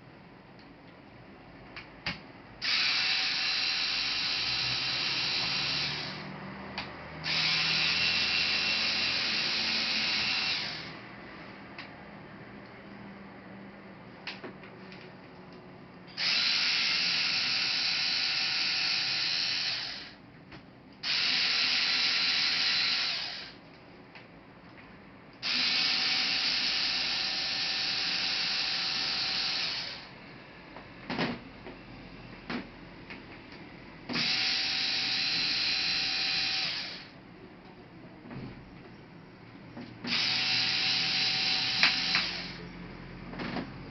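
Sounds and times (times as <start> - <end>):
electric screwdriver whirring: 2.6 - 6.3, 7.2 - 11.0, 16.2 - 20.2, 21.0 - 23.6, 25.4 - 30.1, 34.1 - 37.1, 40.0 - 42.6.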